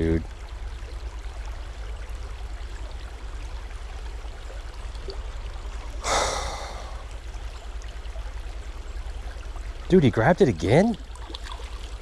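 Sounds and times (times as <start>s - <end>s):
small stream rushing: 0.0s - 12.0s
person gasping: 6.0s - 7.1s.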